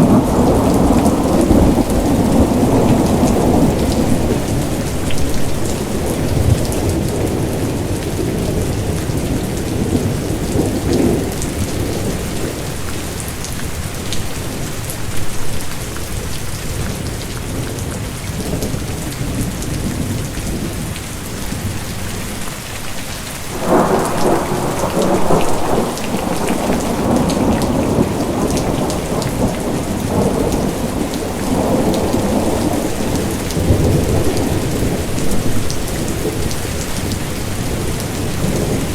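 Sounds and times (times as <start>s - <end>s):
thunder rumbling: 0.0s - 13.1s, 23.5s - 38.9s
steady rain: 0.0s - 38.9s.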